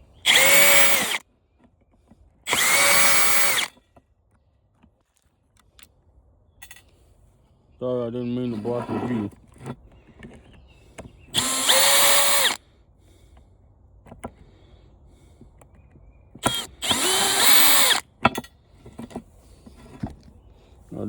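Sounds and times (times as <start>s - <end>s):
cordless drill motor whine: 0.2s - 1.2s, 2.5s - 3.8s, 11.3s - 12.6s, 16.4s - 18.1s.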